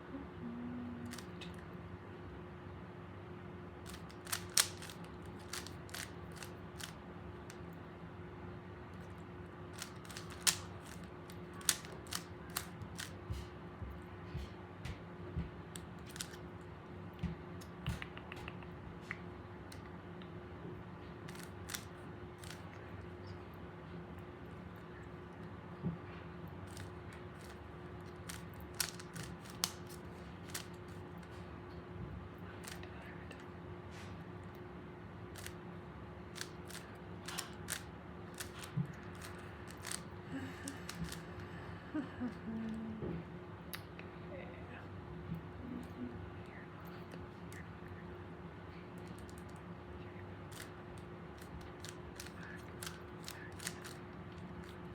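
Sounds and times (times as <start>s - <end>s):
faint steady hum: 0.0s - 54.9s
puzzle cube clicking: 1.1s - 1.4s, 3.9s - 7.6s, 9.8s - 13.2s, 16.0s - 16.4s, 21.3s - 22.6s, 26.7s - 31.0s, 36.4s - 41.2s, 51.4s - 54.0s.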